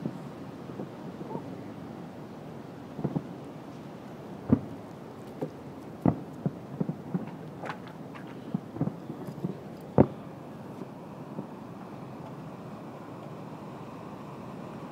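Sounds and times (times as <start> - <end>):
distant fireworks booms and pops: 2.9 - 3.7, 4.3 - 11.6.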